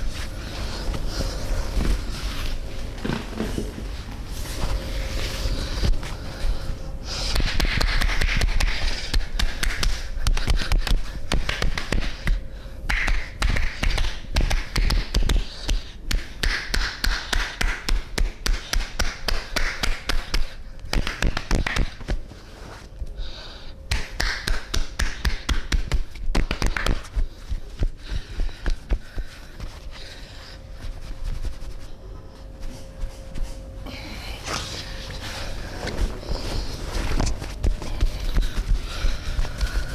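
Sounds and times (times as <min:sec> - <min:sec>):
hands slapping on body: 0:07.3 - 0:22.2, 0:23.9 - 0:28.0.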